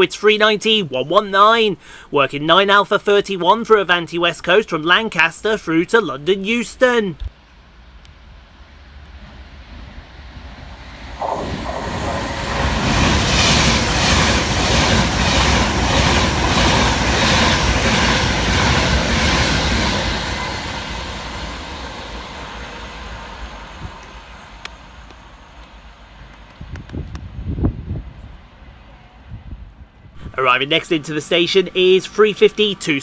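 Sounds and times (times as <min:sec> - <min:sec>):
electric train passing: 0:07.4 - 0:33.0.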